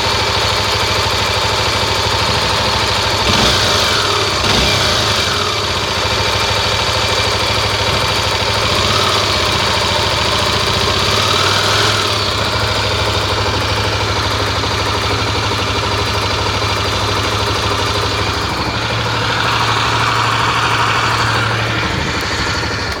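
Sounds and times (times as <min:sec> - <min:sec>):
engine idling: 0:00.0 - 0:23.0.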